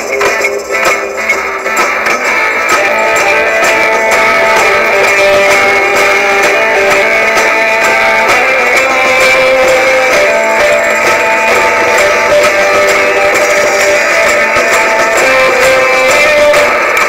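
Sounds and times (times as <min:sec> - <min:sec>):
guitar-led song with steady beat: 0:00.0 - 0:17.0.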